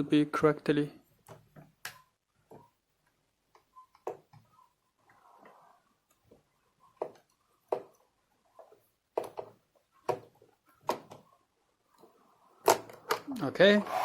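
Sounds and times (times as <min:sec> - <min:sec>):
lock parts knocking and clicking: 0:12.6 - 0:13.3.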